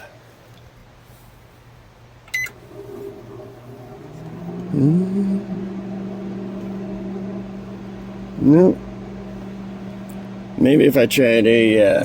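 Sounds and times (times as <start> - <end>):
microwave oven humming: 2.3 - 12.0
loud swooping tone: 2.5 - 12.0.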